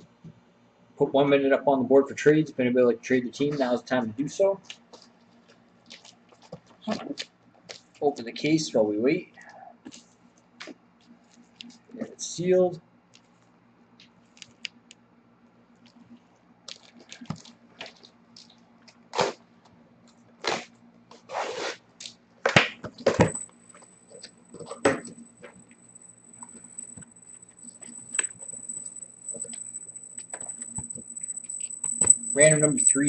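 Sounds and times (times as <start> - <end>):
high-pitched whine: 23.1 - 33.0.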